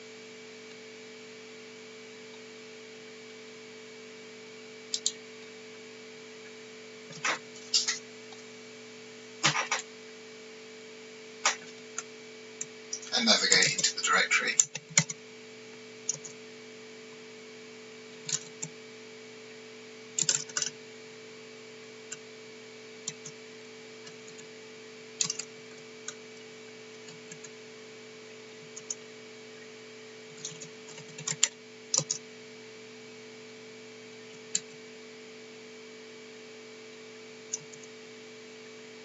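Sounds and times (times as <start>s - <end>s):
low electrical hum: 0.0s - 39.0s
keyboard keystrokes: 4.9s - 5.2s, 20.2s - 20.7s, 25.2s - 25.4s, 30.4s - 32.2s.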